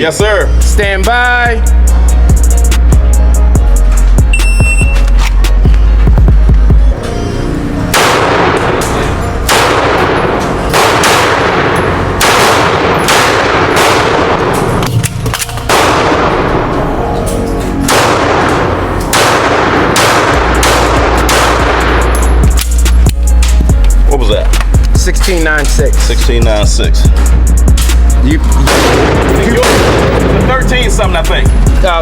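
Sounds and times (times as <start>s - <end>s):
pistol shots: 7.9s - 16.8s, 17.8s - 23.6s, 27.7s - 30.5s.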